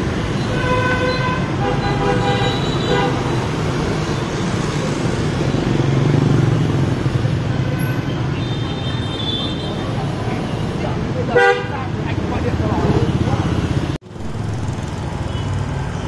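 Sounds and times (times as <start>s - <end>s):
motorbike and car engines rumbling: 0.0s - 16.0s
car horn honking: 0.4s - 3.6s, 11.3s - 11.8s.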